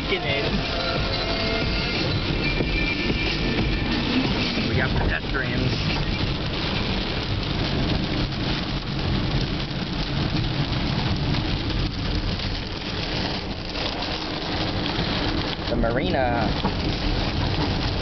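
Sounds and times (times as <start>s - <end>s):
car engine running: 0.0s - 18.0s
rain: 0.0s - 18.0s
tyres on wet road: 0.0s - 18.0s.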